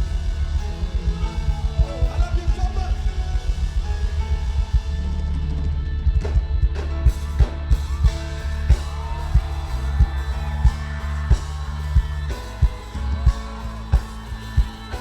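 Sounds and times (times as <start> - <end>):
bass: 0.0 - 15.0
gospel band playing: 0.0 - 15.0
steady drum beat: 0.0 - 15.0
person singing: 5.6 - 15.0.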